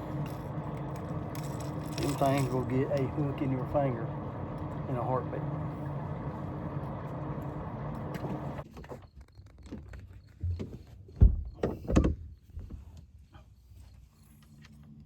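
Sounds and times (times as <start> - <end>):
low mechanical hum: 0.0 - 9.2.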